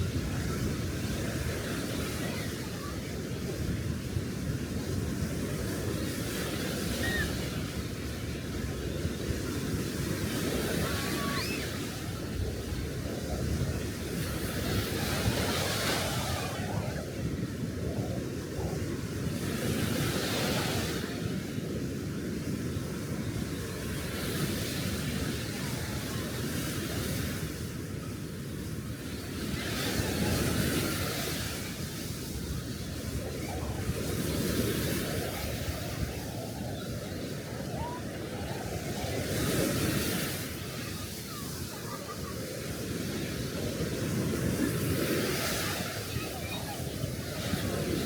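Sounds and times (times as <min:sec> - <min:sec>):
sea waves washing onto shore: 0:00.0 - 0:48.0.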